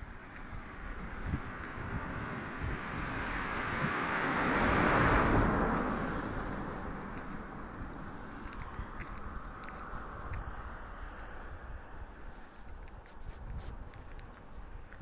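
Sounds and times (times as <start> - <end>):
car driving past: 1.1 - 11.0.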